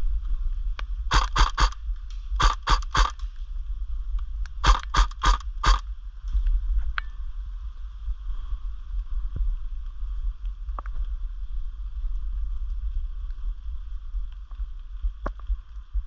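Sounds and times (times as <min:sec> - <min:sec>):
wind rumble on microphone: 0:00.0 - 0:16.0
airsoft gun firing: 0:01.1 - 0:01.8, 0:02.4 - 0:03.2, 0:04.6 - 0:05.8.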